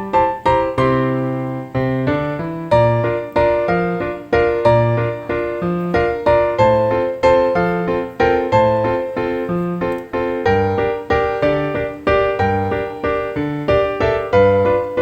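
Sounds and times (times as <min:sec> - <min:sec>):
piano music: 0:00.0 - 0:15.0.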